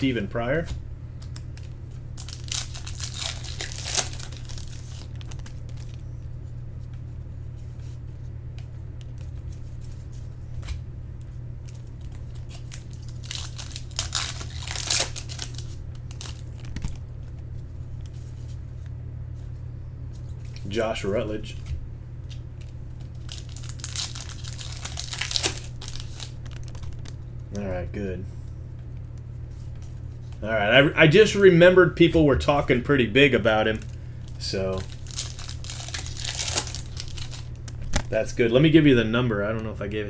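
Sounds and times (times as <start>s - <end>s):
steady low hum: 0.0s - 40.0s
wrappers tearing and crinkling: 1.2s - 6.0s, 11.7s - 17.0s, 22.6s - 27.2s, 33.7s - 38.1s.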